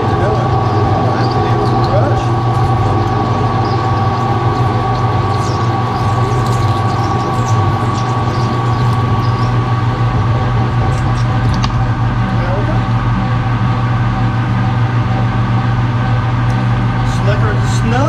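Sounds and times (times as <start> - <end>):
metal lathe humming and whining: 0.0 - 18.0.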